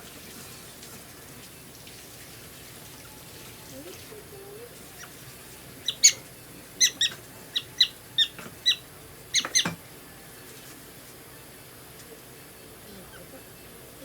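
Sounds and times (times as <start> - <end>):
prairie dog chirping: 5.8 - 9.7.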